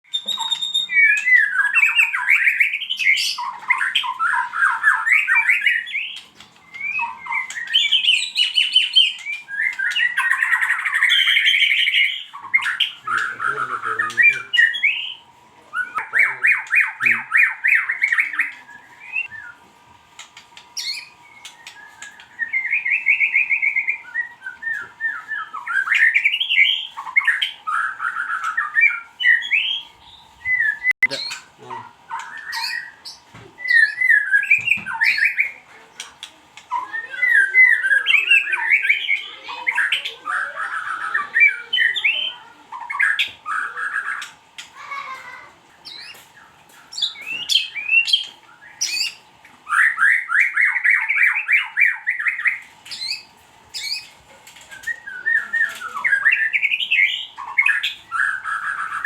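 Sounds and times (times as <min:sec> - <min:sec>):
bird singing trills and whistles: 0:00.0 - 0:45.0, 0:45.8 - 0:59.0.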